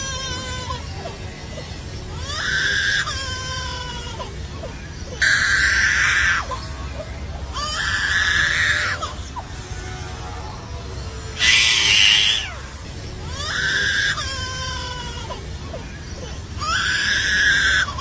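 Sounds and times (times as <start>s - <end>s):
bird imitating crying baby: 2.2s - 4.4s, 5.2s - 6.7s, 7.6s - 9.3s, 11.4s - 12.7s, 13.3s - 15.5s, 16.2s - 18.0s.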